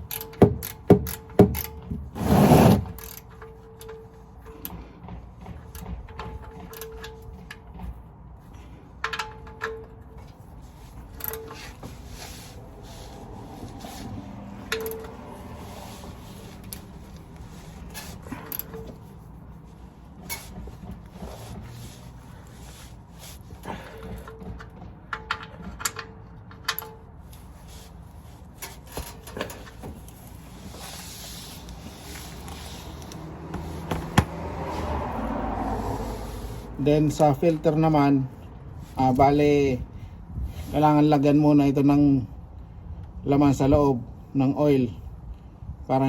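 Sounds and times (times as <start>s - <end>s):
tools and parts clicking: 0.0s - 12.4s, 14.0s - 19.4s, 23.6s - 30.4s
loud scraping: 2.2s - 3.0s.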